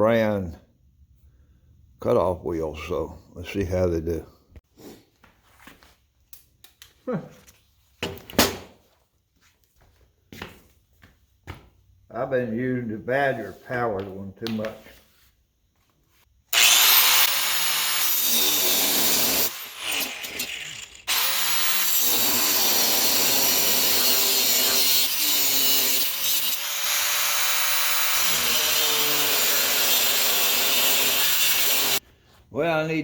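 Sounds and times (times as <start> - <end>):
angle grinder cutting metal: 16.5 - 32.0.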